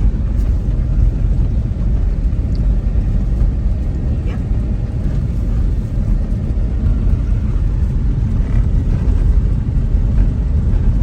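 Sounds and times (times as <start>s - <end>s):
car engine rumble: 0.0s - 11.0s
road noise: 0.0s - 11.0s.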